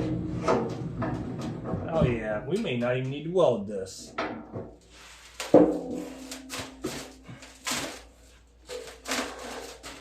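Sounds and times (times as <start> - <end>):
tools knocking on metal drum: 4.1 - 4.8.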